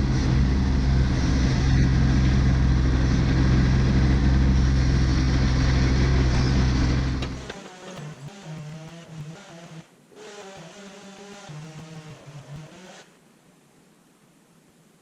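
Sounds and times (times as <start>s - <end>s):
tractor diesel engine running: 0.0s - 9.4s.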